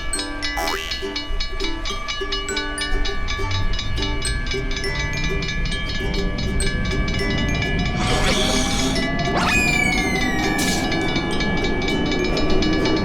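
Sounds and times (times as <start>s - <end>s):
pulsing tones: 0.4s - 1.2s, 7.9s - 11.1s.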